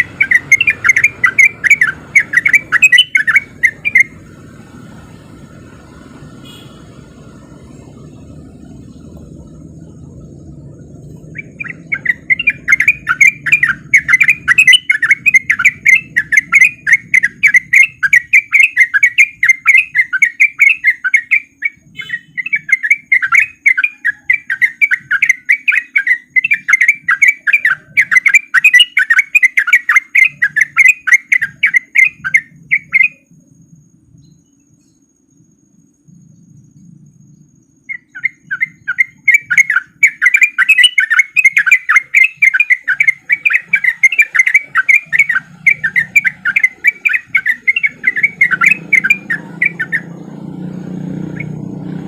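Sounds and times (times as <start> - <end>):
bird singing chattering notes: 0.0 - 52.0.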